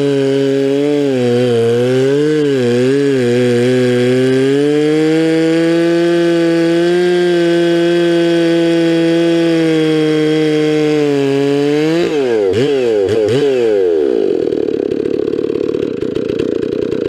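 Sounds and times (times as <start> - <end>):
chainsaw ripping a log: 0.0 - 17.0.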